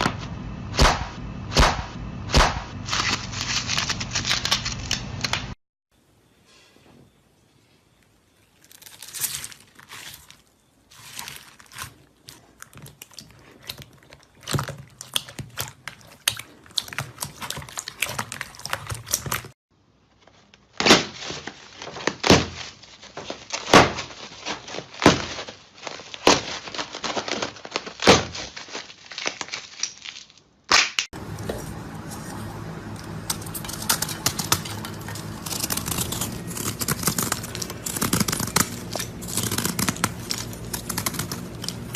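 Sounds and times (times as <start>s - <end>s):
slime squishing and crackling: 8.5s - 19.6s, 20.8s - 41.9s.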